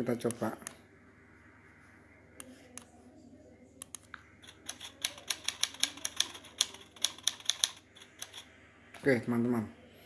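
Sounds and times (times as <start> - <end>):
typewriter keystrokes: 4.4 - 8.4.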